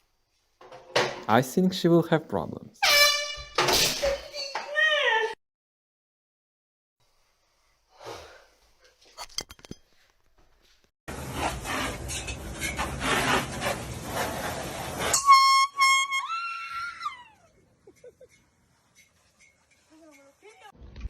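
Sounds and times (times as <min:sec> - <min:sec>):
reedy horn tone: 0:02.8 - 0:03.6.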